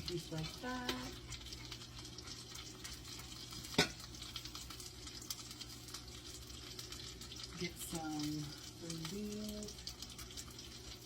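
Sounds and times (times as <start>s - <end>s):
chicken sizzling in a pan: 0.0s - 11.0s.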